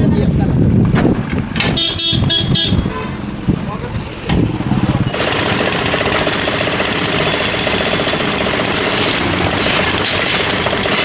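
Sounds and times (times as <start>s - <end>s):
engine running loudly: 2.2s - 11.0s.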